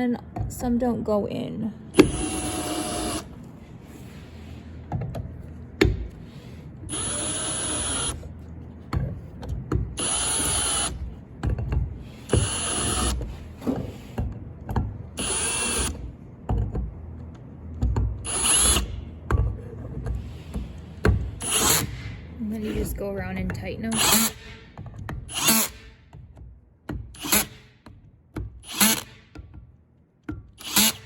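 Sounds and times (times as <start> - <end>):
power drill driving screws: 2.0 - 3.3, 6.9 - 8.2, 10.0 - 11.0, 12.3 - 13.3, 15.2 - 16.0, 18.3 - 19.0, 21.4 - 22.0, 23.9 - 24.6, 25.3 - 25.9, 27.2 - 27.6, 28.6 - 29.2, 30.6 - 31.0.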